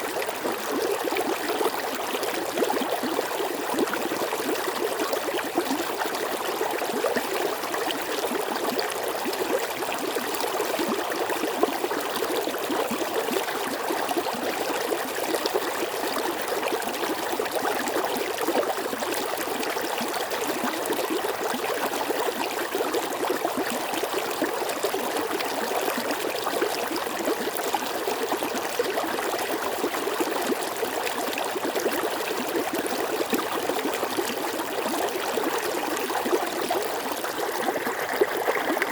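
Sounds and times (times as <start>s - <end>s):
stream water rushing and gurgling: 35.0s - 38.9s.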